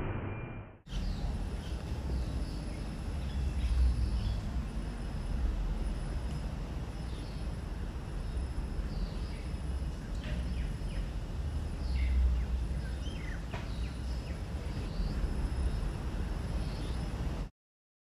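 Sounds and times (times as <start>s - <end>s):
low rumble: 0.0s - 2.3s
birds chirping: 0.9s - 4.6s, 6.7s - 15.9s.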